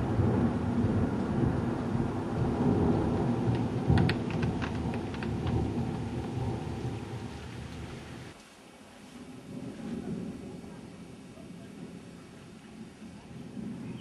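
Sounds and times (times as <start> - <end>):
rolling thunder: 0.0 - 8.4, 9.2 - 14.0
sharp crackling clicks: 3.5 - 6.4.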